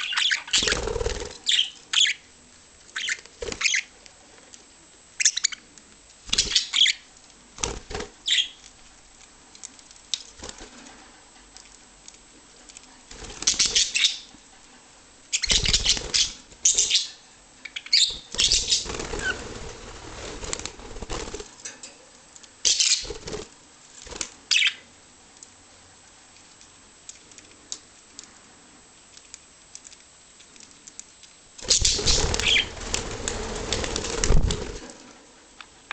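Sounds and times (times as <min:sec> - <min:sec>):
budgies flapping wings: 0:00.1 - 0:02.1, 0:03.0 - 0:03.9, 0:06.3 - 0:06.9, 0:13.1 - 0:14.2, 0:15.4 - 0:17.0, 0:17.9 - 0:21.5, 0:22.8 - 0:23.5, 0:31.6 - 0:35.0.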